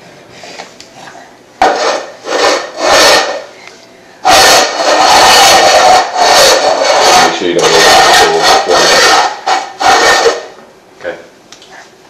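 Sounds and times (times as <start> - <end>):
loud rasping noise: 1.6 - 3.5, 4.2 - 10.6.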